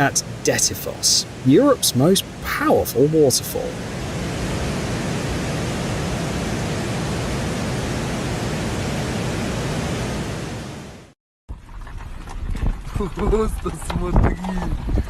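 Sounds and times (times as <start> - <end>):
waterfall rushing: 0.0 - 11.1.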